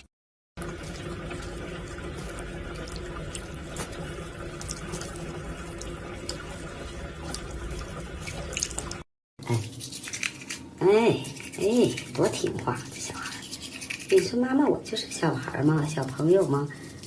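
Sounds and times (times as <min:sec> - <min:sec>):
small clicks and splashes: 0:00.6 - 0:06.6, 0:07.2 - 0:09.0
running water: 0:00.6 - 0:10.2.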